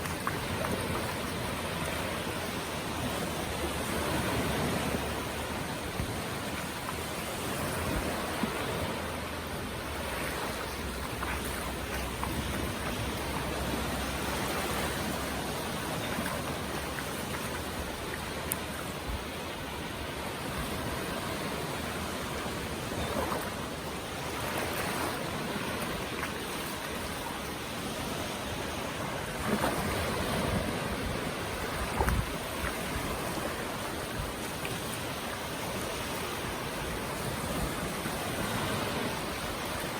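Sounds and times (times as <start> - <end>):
ocean waves on a beach: 0.0 - 39.9.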